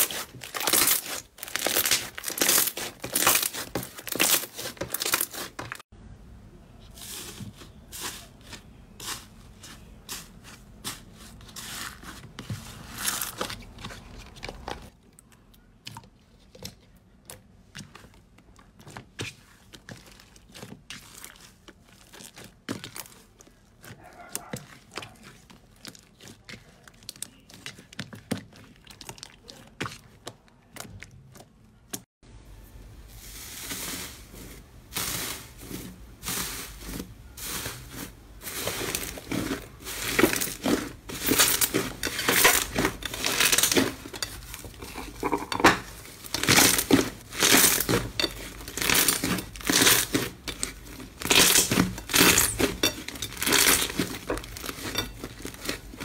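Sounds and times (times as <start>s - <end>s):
slime squelching by hand: 0.0s - 5.9s, 6.8s - 32.1s, 33.1s - 56.0s.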